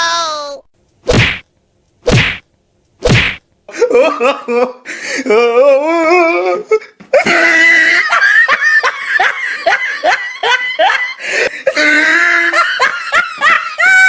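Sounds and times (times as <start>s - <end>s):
person laughing hard: 3.7s - 6.4s, 7.1s - 14.0s.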